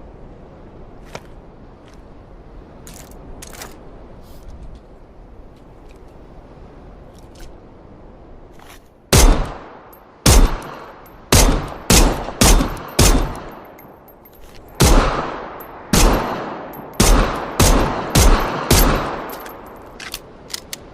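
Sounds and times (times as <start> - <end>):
pistol shots echoing: 9.1 - 13.6, 14.8 - 19.4
small clicks: 19.3 - 20.9.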